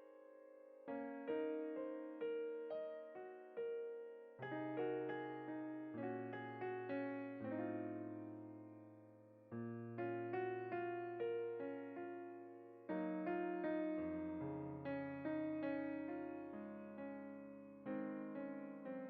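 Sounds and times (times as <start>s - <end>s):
soft piano music: 0.0s - 19.0s.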